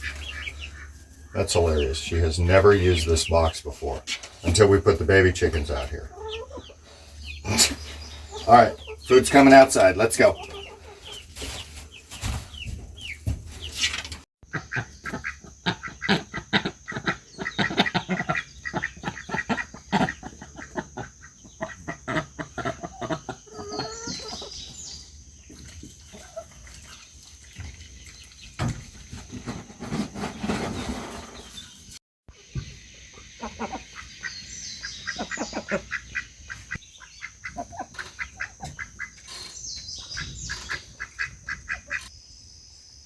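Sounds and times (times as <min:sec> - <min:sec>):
chickens clucking: 0:00.0 - 0:31.7, 0:32.3 - 0:42.1.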